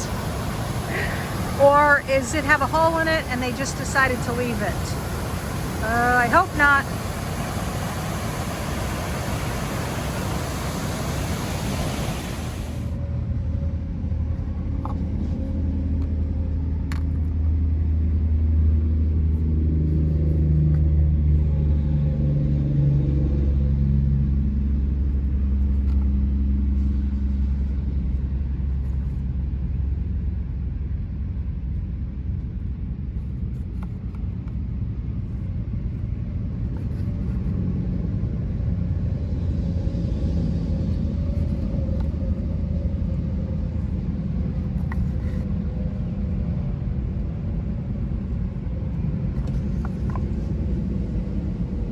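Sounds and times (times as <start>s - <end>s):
broad hiss: 0.0s - 13.0s.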